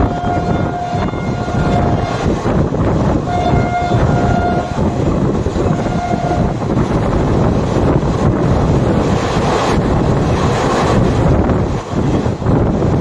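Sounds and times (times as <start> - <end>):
locomotive horn blasts: 0.0 - 6.8
train running: 0.0 - 13.0.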